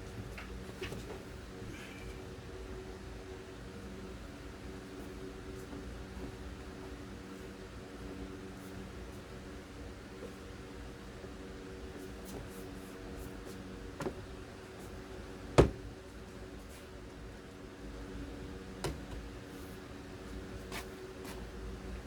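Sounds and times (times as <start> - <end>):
knocks: 15.6 - 15.9.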